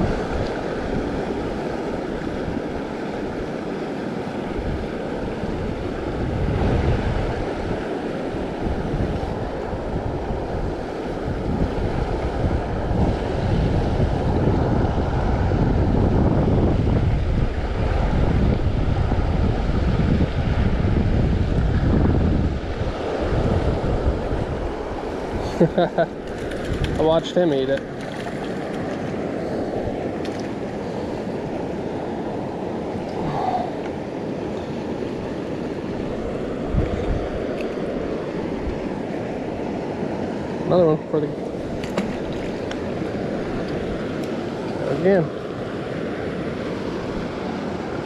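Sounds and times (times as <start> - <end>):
wind buffeting microphone: 0.0 - 48.0
creek water flowing: 21.5 - 48.0.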